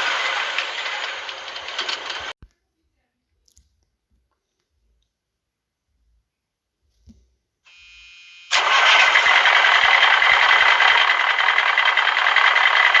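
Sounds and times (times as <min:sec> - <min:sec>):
truck engine running: 0:00.0 - 0:02.4, 0:08.5 - 0:13.0
faint buzzing tone: 0:07.7 - 0:08.5.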